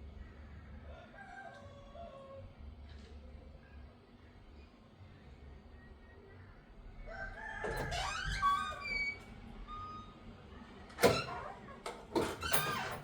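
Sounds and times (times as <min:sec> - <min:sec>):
rooster crowing: 0:00.9 - 0:02.4, 0:07.0 - 0:08.1.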